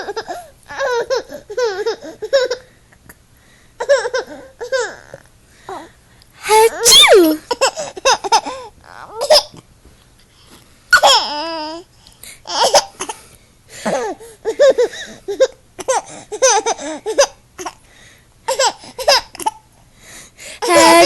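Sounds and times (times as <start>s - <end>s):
fake sneezes: 6.4s - 7.4s
child laughing: 6.4s - 7.6s, 20.6s - 21.0s.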